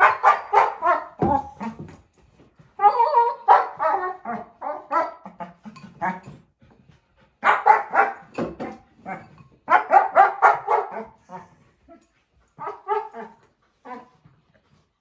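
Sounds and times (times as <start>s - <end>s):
puppy barking: 0.0s - 1.6s, 2.9s - 5.3s, 7.4s - 8.4s, 9.7s - 11.4s, 12.6s - 14.0s.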